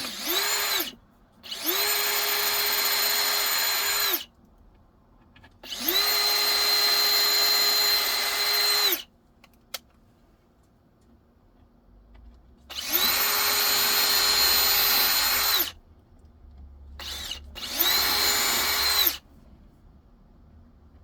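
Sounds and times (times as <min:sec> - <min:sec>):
power drill whine: 0:00.0 - 0:04.2, 0:05.6 - 0:09.0, 0:12.7 - 0:15.8, 0:17.0 - 0:19.2.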